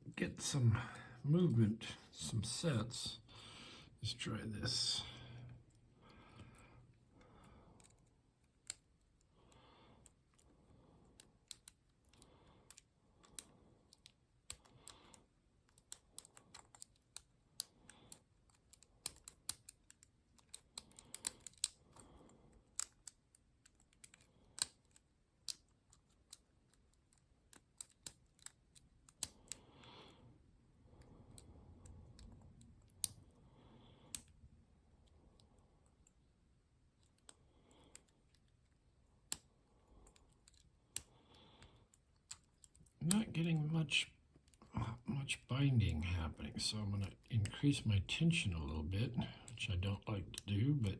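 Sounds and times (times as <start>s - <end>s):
lock pick clicking in padlock: 15.7s - 22.0s, 22.7s - 29.6s.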